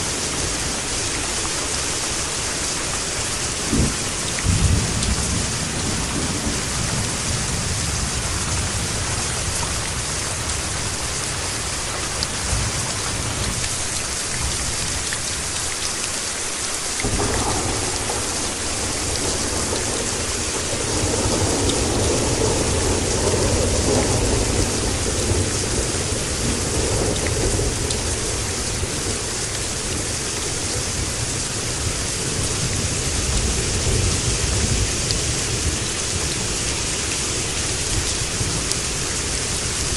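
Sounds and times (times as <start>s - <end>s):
steady rain: 0.0s - 39.9s
low rolling thunder: 3.6s - 10.7s, 17.0s - 39.9s.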